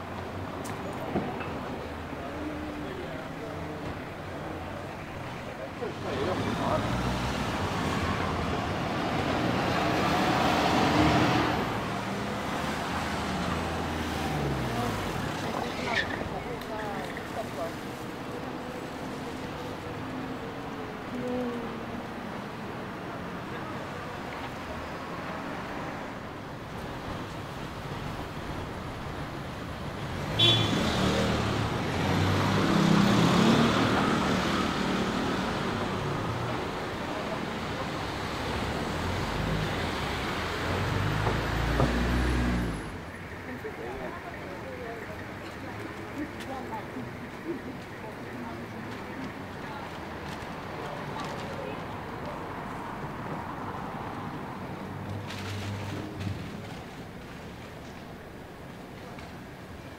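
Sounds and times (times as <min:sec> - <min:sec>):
low traffic hum: 0:00.0 - 0:59.9
vehicle passing: 0:30.1 - 0:57.7
vehicle engine passing: 0:30.5 - 0:43.0.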